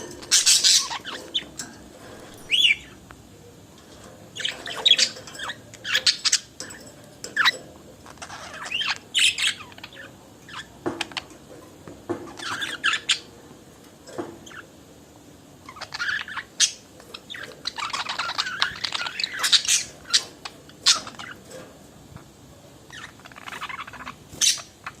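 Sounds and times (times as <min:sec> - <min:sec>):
budgerigars chirping and squawking: 0:00.0 - 0:01.6, 0:02.2 - 0:03.0, 0:04.4 - 0:11.2, 0:12.3 - 0:13.3, 0:15.6 - 0:21.6, 0:22.9 - 0:25.0.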